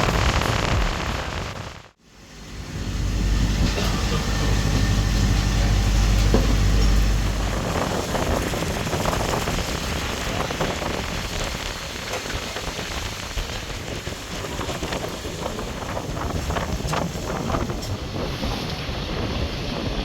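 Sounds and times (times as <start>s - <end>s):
splashing water hiss with crackles: 0.0s - 2.0s, 3.4s - 20.0s.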